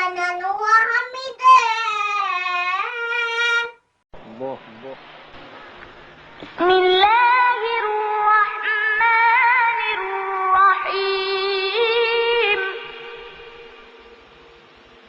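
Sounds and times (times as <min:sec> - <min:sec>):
child chanting melodically: 0:00.0 - 0:03.8, 0:06.6 - 0:13.0.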